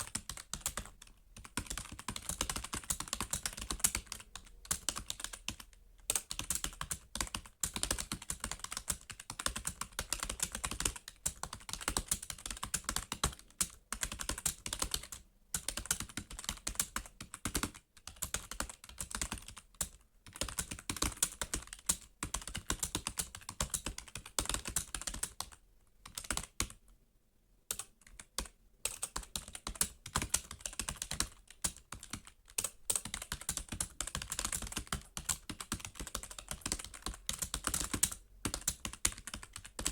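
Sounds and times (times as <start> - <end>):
fast typing on keyboard: 0.0 - 26.8, 27.7 - 39.9.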